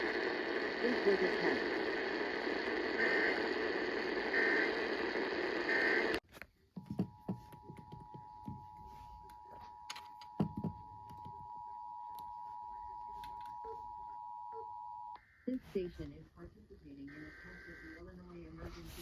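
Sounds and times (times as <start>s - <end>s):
radio static: 0.0s - 6.2s, 11.9s - 19.0s.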